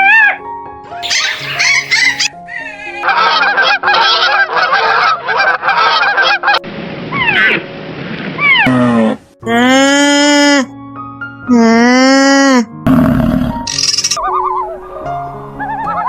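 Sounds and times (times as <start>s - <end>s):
geese honking: 1.0s - 2.3s, 3.0s - 6.6s
background music: 1.0s - 4.0s, 9.4s - 16.0s.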